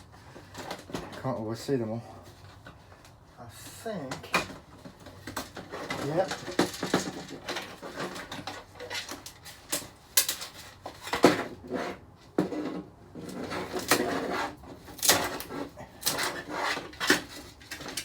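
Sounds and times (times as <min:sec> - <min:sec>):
plastic clicks and clatters: 0:04.1 - 0:11.5, 0:14.9 - 0:18.0.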